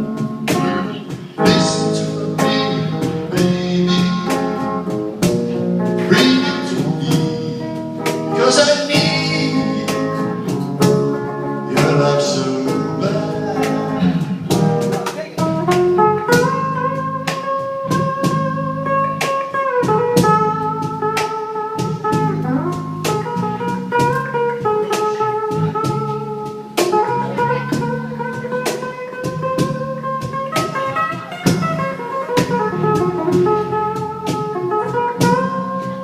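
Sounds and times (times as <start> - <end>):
low bass line: 0.0 - 19.2, 32.4 - 34.4
lead guitar bending notes: 0.0 - 36.0
live blues band: 0.0 - 36.0
steady drum beat: 0.0 - 36.0.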